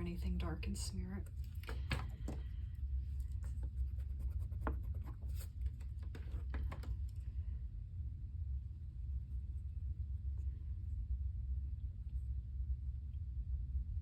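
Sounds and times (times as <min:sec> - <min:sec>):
steady low hum: 0:00.0 - 0:14.0
eraser rubbing on paper: 0:03.5 - 0:05.6.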